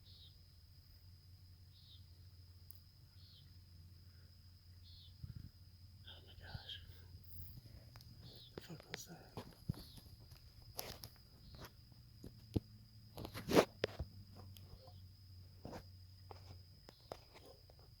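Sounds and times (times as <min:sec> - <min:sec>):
faint high-pitched whine: 0:00.0 - 0:18.0
rustles clicks and crunches: 0:08.6 - 0:11.7, 0:13.2 - 0:14.1.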